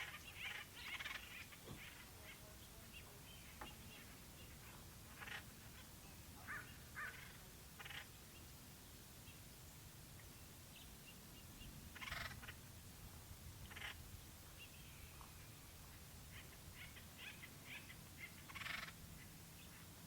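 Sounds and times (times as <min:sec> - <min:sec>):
woodpeckers calling harshly: 0:00.0 - 0:04.2, 0:05.1 - 0:08.2, 0:11.9 - 0:12.7, 0:13.6 - 0:14.1, 0:15.9 - 0:19.8.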